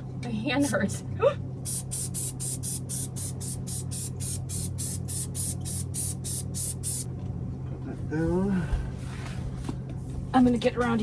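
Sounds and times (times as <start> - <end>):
aerosol can hissing in short bursts: 1.7 - 7.1.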